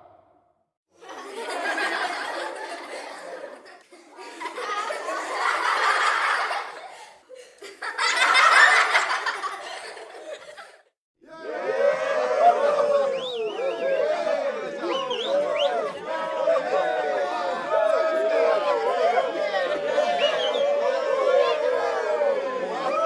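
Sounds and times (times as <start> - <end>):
studio audience laughing: 1.0 - 10.9, 14.8 - 23.0.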